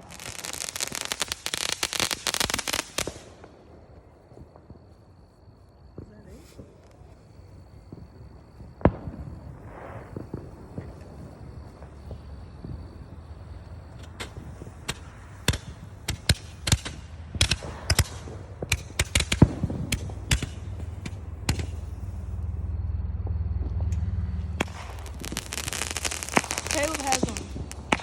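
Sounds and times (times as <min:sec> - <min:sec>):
fireworks sharp bangs: 0:00.0 - 0:05.2, 0:05.8 - 0:22.9, 0:23.8 - 0:28.0
low rumble: 0:19.5 - 0:28.0.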